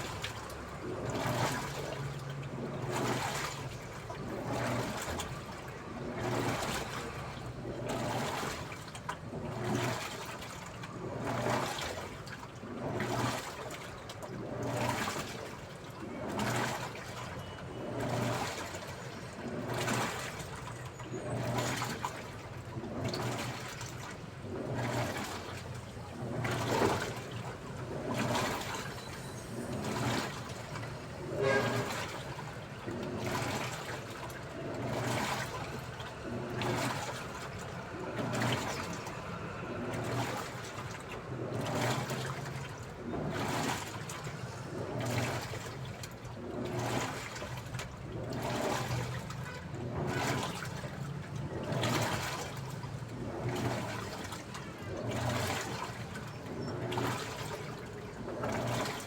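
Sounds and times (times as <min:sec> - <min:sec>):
washing machine water sloshing: 0:00.0 - 0:59.0
low motor hum: 0:26.2 - 0:59.0.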